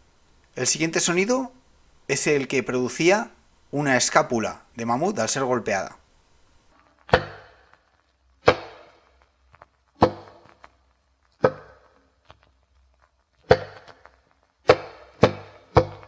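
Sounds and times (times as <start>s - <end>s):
bone struck with ringing knock: 8.5s - 8.8s, 14.7s - 16.0s.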